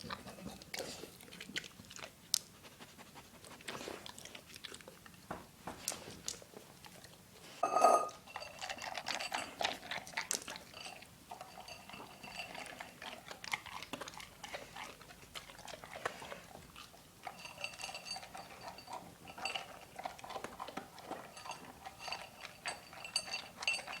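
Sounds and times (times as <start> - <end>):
dog eating and crunching: 0.0 - 24.0
ringing clink: 7.6 - 8.5.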